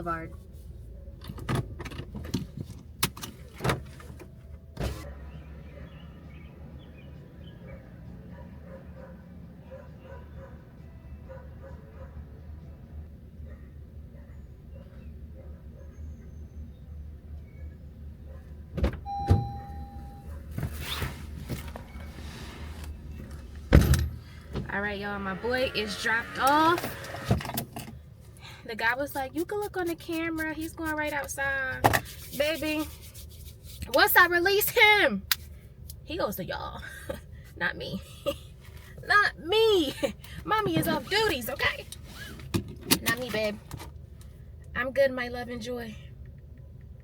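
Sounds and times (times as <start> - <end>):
low steady rumble: 11.2 - 47.0
electronic chime tone: 19.1 - 20.3
rustling and handling noise: 20.3 - 24.7, 29.1 - 34.2.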